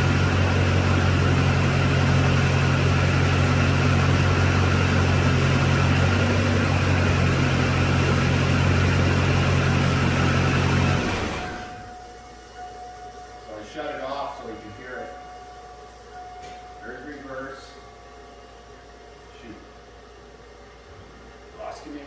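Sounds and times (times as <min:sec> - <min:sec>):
pickup truck engine idling: 0:00.0 - 0:12.0.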